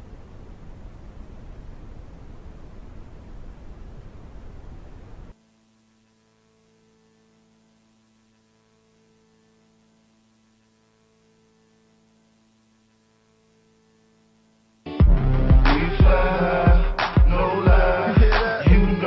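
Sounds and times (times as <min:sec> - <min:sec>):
faint mains hum: 0:00.0 - 0:19.0
loud music: 0:14.9 - 0:19.0.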